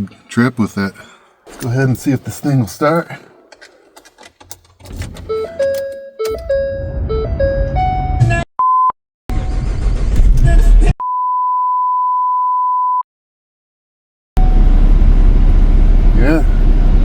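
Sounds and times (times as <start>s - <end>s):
van engine rumbling: 14.4s - 17.0s.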